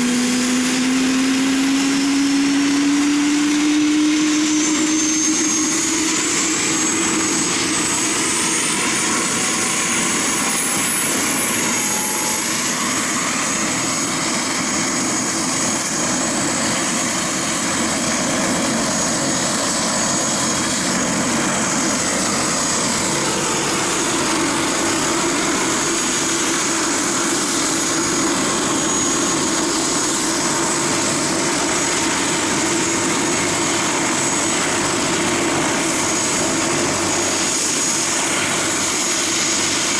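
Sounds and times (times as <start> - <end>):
aircraft turbine engine whine: 0.0 - 39.9.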